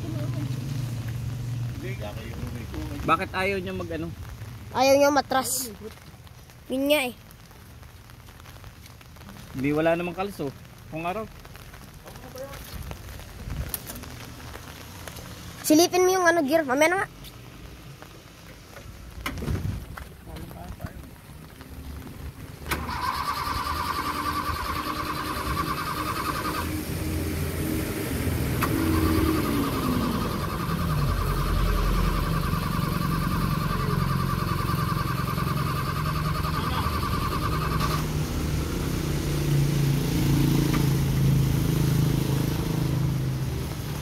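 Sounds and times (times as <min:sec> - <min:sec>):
starter motor cranking: 0:22.7 - 0:26.7.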